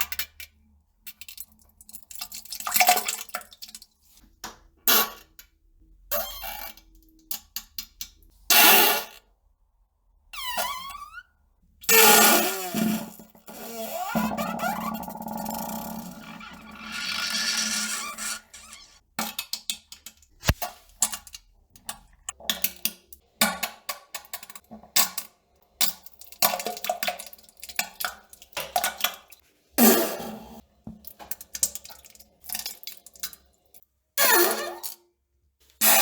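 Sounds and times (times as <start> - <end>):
fart and sputtering sounds: 12.0 - 19.0.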